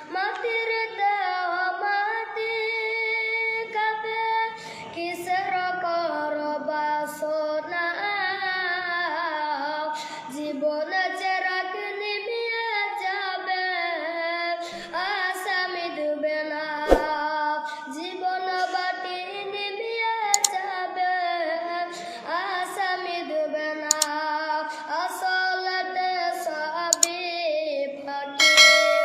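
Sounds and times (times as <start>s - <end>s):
person singing devotional song: 0.0s - 29.0s
sharp click: 20.4s - 20.6s, 23.9s - 24.2s, 26.9s - 27.2s.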